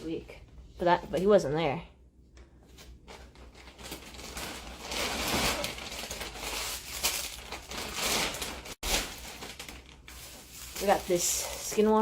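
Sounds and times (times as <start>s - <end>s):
plastic bag rustling: 2.8s - 12.0s.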